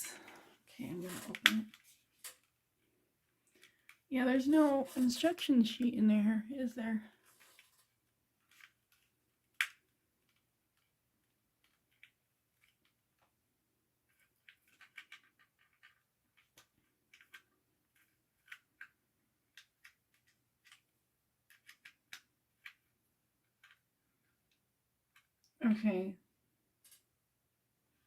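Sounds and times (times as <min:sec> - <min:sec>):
plastic toy clicks and scrapes: 0:14.1 - 0:20.9.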